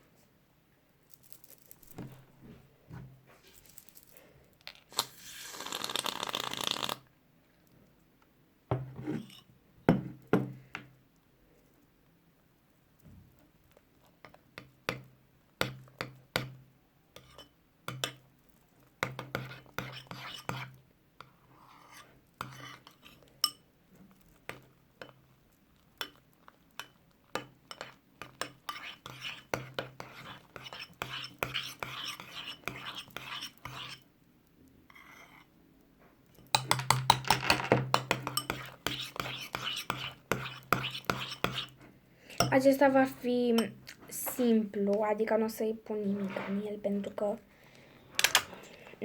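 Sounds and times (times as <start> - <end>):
utensil clinking against bowl: 36.6 - 41.7.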